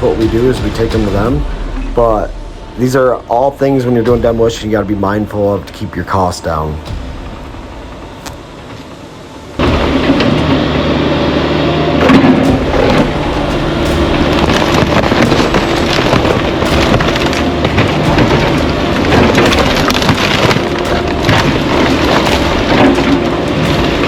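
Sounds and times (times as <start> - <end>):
debris crunching and crashing: 0.0 - 3.6, 9.6 - 11.4, 12.0 - 24.0
diesel engine under load: 9.4 - 24.0.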